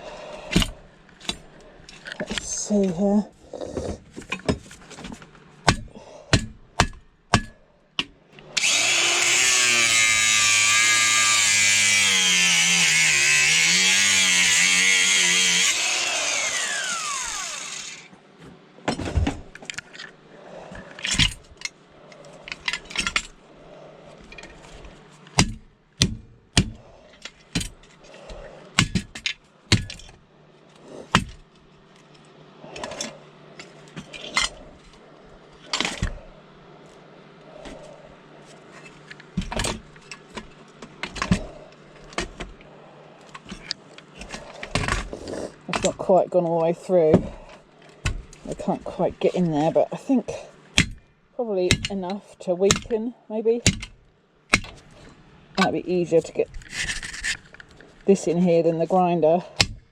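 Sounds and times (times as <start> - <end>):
angle grinder cutting metal: 8.6 - 18.1.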